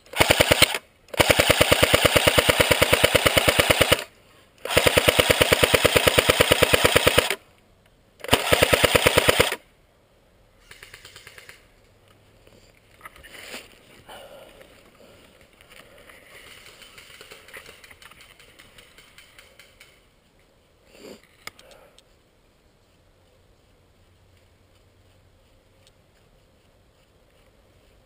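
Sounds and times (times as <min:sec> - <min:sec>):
airsoft gun full-auto bursts: 0:00.0 - 0:07.4, 0:08.2 - 0:09.6
distant airsoft bursts: 0:00.0 - 0:07.5, 0:08.2 - 0:09.7.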